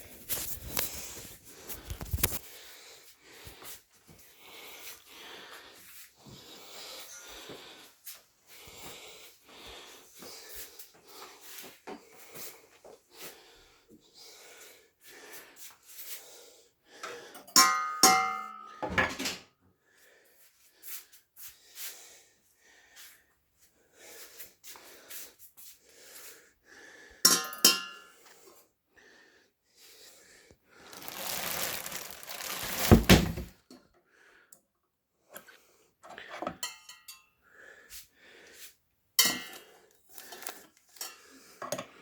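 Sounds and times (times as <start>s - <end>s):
packaging rustling: 30.8s - 33.5s, 40.2s - 40.6s
handling rustles and knocks: 30.9s - 33.5s.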